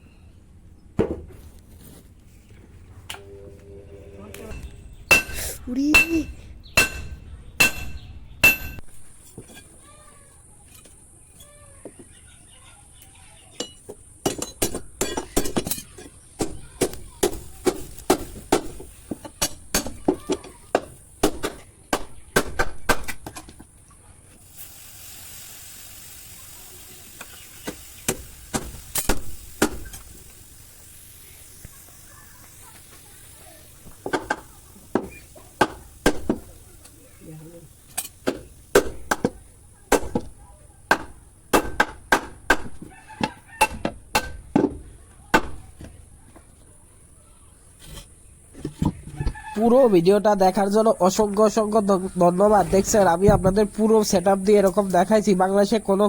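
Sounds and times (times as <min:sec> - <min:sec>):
hammer ringing on steel blade: 0:04.6 - 0:08.8.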